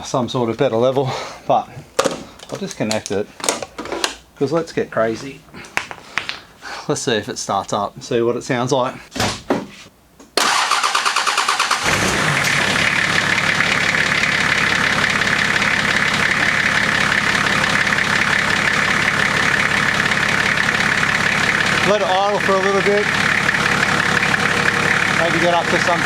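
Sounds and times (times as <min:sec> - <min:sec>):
diesel engine cranking and idling: 0:10.4 - 0:26.0.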